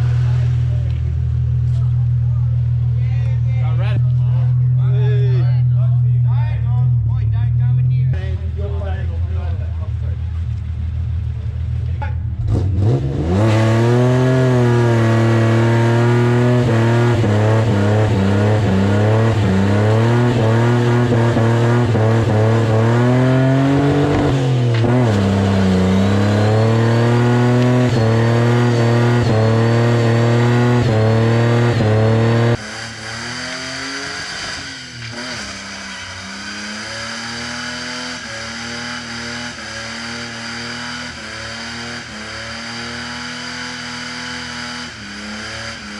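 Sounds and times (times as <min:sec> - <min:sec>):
car engine revving: 0:00.0 - 0:45.9.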